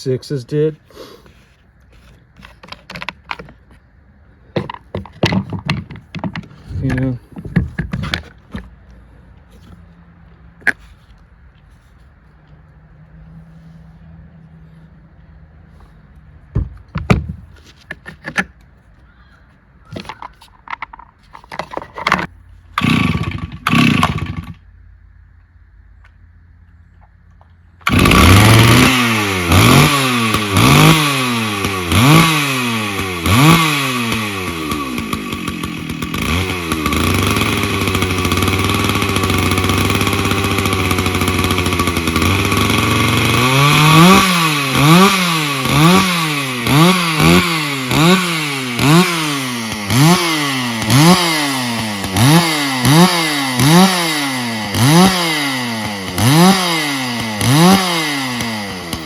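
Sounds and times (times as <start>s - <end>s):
chainsaw revving and idling: 22.8s - 24.6s, 27.8s - 59.0s.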